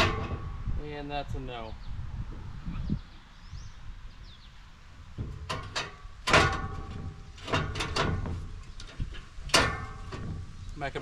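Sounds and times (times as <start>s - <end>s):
ringing metal clanks and scrapes: 0.0s - 0.7s, 5.2s - 10.8s.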